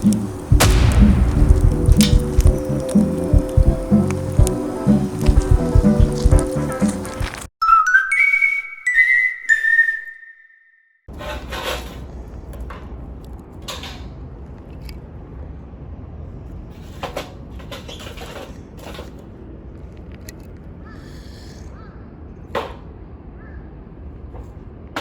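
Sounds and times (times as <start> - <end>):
sharp clicks or knocks: 0.0 - 6.5
whistle-like tone gliding in pitch: 7.6 - 10.9.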